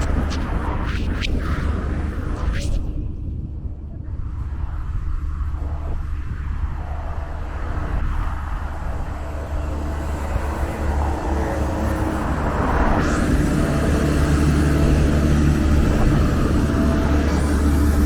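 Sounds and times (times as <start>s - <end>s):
road traffic: 7.3s - 18.0s
vehicle engine running close: 8.2s - 18.0s.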